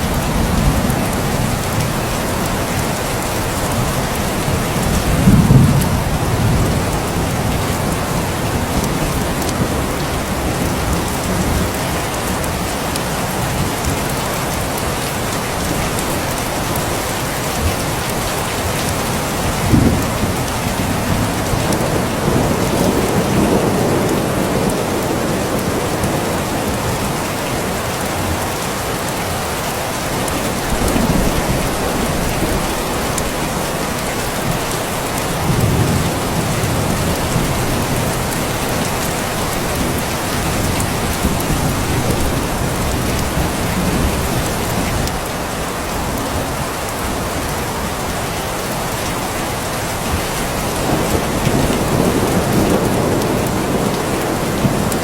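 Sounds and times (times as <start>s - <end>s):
steady rain falling: 0.0s - 55.0s
thunder rolling: 3.7s - 11.8s, 30.5s - 45.2s, 50.1s - 55.0s.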